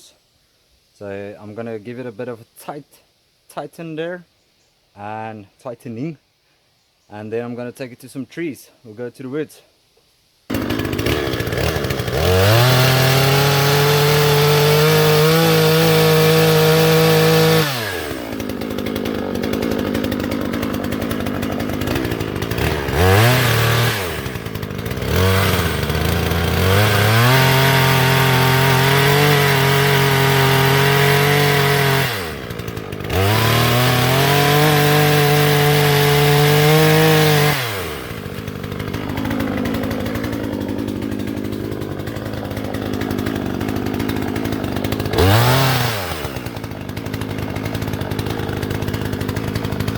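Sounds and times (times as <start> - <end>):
chainsaw revving and cutting wood: 10.5 - 49.9.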